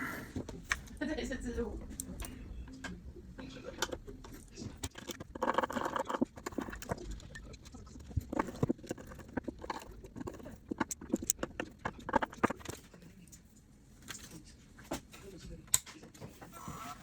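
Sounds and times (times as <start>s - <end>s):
small hard objects clicking: 4.8s - 12.8s.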